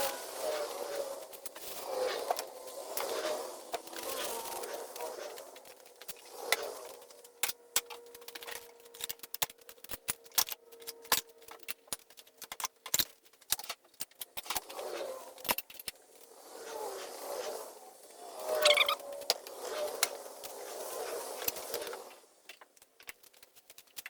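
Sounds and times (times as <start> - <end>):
tools and metal parts clinking: 6.8 - 14.6.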